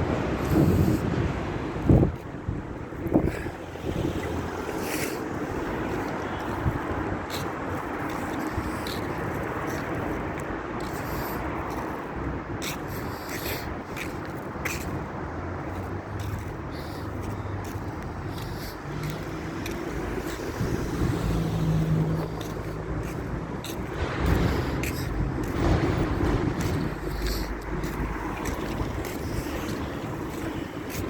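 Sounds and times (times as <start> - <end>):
diesel engine running: 15.4 - 31.0.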